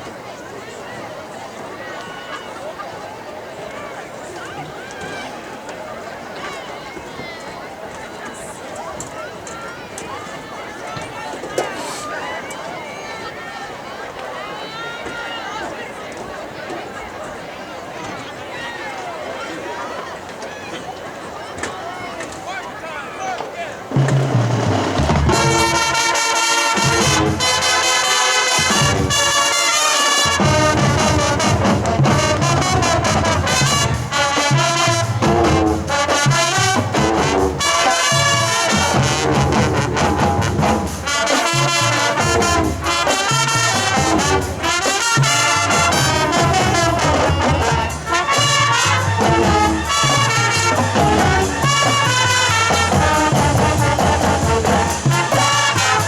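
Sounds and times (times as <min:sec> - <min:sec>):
marching band playing rock: 0:23.9 - 0:56.0.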